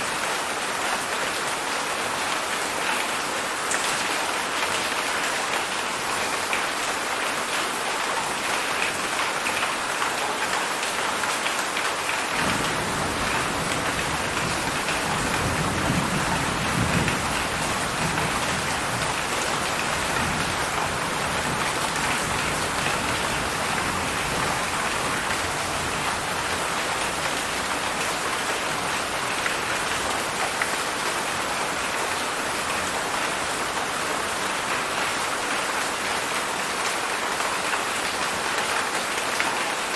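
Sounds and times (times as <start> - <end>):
heavy rain falling: 0.0 - 39.9
low rumble of thunder: 12.4 - 27.3.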